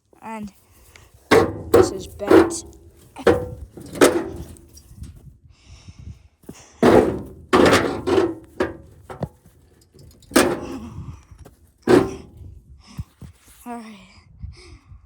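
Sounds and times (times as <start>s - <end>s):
metallic thunks on car body: 1.3s - 4.8s, 6.8s - 11.0s, 11.9s - 12.4s.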